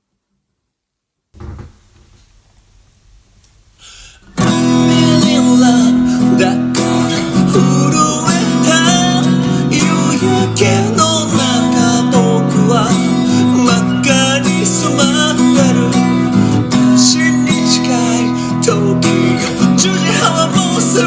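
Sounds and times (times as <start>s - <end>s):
faint bump: 1.4s - 2.4s
acoustic guitar strumming: 4.3s - 21.0s.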